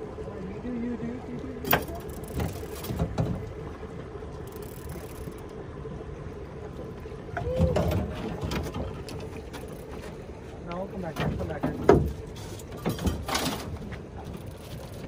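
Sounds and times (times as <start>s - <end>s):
boat motor running: 0.0s - 15.0s
knocks and clunks on boat: 1.4s - 3.9s, 6.6s - 15.0s.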